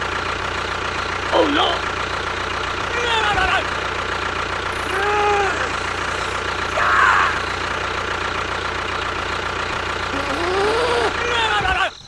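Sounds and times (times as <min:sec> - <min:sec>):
engine idling: 0:00.0 - 0:12.0
voice-like calls: 0:04.8 - 0:07.7, 0:10.1 - 0:12.0.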